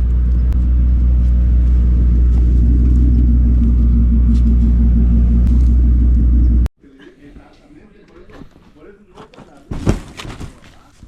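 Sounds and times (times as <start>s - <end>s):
truck engine running: 0.0s - 6.7s.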